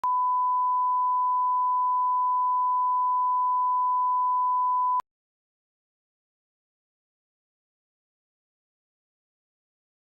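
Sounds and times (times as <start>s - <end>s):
steady electronic beep tone: 0.0s - 5.0s.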